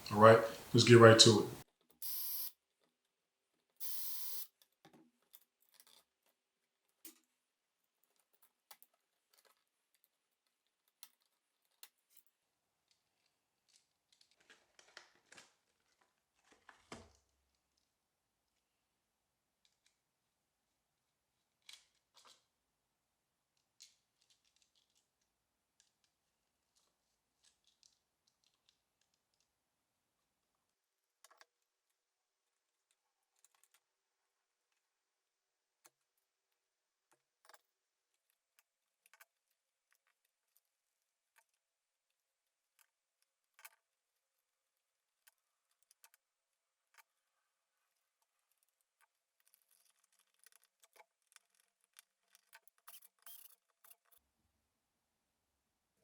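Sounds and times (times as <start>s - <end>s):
faint clicks and ticks: 23.5s - 34.9s, 35.8s - 44.5s, 45.1s - 54.3s.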